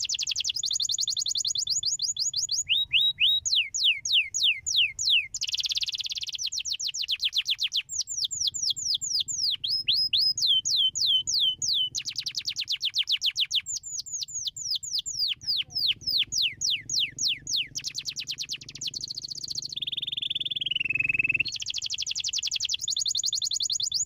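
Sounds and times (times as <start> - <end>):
canary singing: 0.0 - 24.0.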